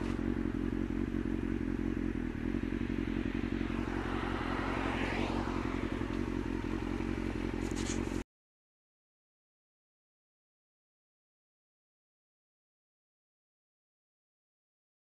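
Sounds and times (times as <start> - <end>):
motorcycle engine running: 0.0 - 8.2
wind and road noise: 0.0 - 8.2.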